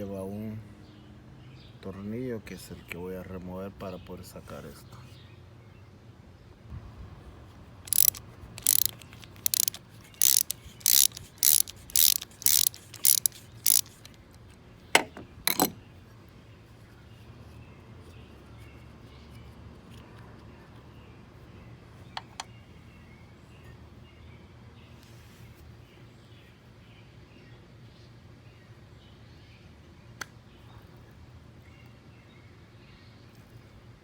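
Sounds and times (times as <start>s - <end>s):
socket ratchet clicking: 7.9s - 14.4s, 15.5s - 15.8s.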